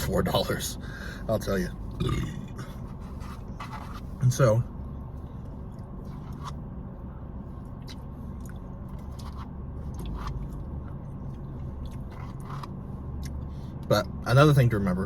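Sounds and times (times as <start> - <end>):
low steady hum: 0.0 - 15.0
soft chewing: 5.1 - 6.6, 7.5 - 13.9.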